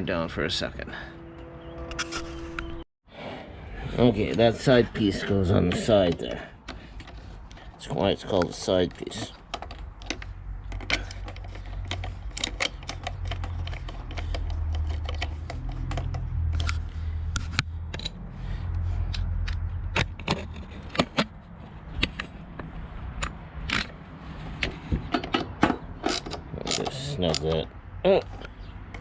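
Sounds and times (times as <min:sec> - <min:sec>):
small metal parts clicking and rattling: 0:09.0 - 0:16.9, 0:26.0 - 0:27.6.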